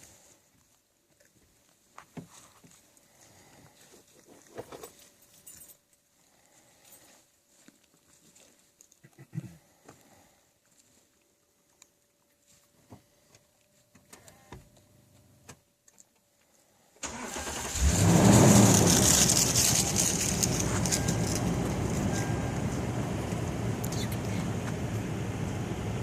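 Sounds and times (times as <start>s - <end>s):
truck engine starting and running: 17.0s - 26.0s.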